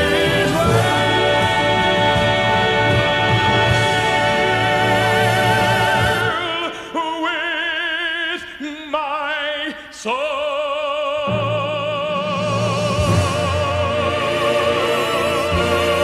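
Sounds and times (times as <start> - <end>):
low band accompaniment: 0.0 - 6.6, 11.3 - 16.0.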